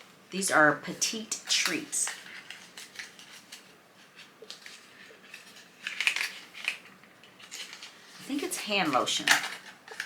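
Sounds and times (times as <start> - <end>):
packaging rustles: 1.4 - 10.0
packaging clicks: 4.4 - 8.0.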